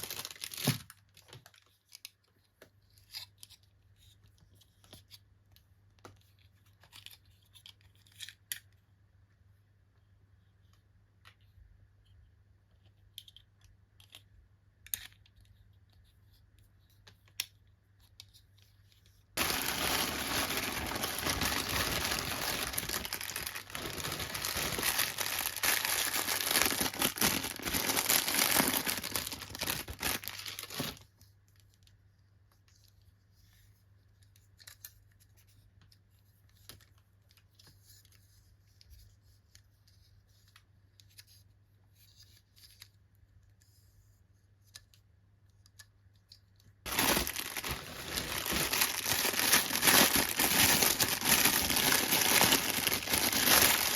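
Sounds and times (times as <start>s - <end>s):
packaging tearing and crinkling: 0.0s - 1.0s, 19.4s - 31.0s, 46.9s - 53.9s.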